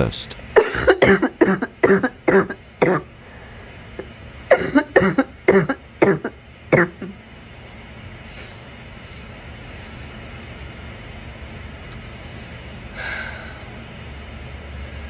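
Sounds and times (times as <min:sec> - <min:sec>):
person coughing harshly: 0:00.6 - 0:03.2, 0:04.5 - 0:07.2.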